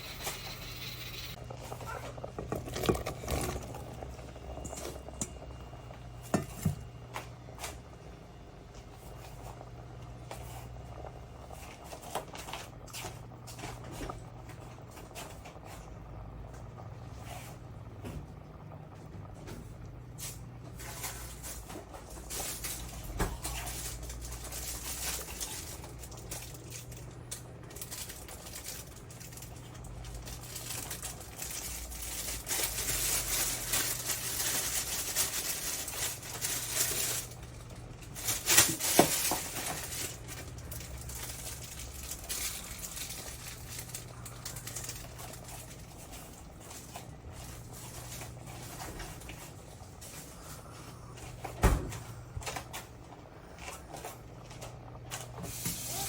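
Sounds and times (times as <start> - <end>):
steady low hum: 0.0 - 55.5.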